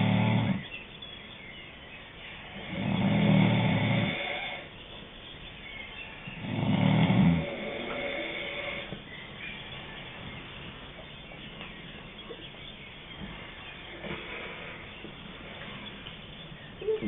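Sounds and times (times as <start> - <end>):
low buzzing snore: 0.0 - 0.7, 2.4 - 4.7, 6.4 - 9.0, 13.9 - 15.9.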